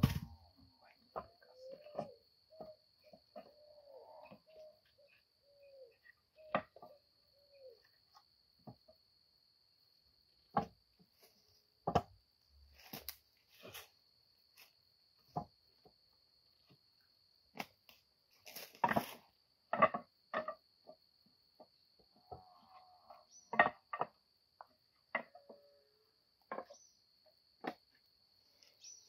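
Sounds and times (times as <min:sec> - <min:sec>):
wood knocking and clattering: 0:10.5 - 0:10.8, 0:11.8 - 0:12.2, 0:15.3 - 0:15.6, 0:19.7 - 0:21.0, 0:26.5 - 0:26.8.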